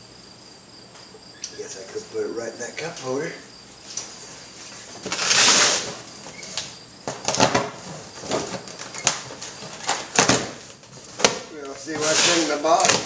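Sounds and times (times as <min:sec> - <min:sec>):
cardboard box rustling scrapes: 0:04.6 - 0:06.2, 0:11.9 - 0:12.9.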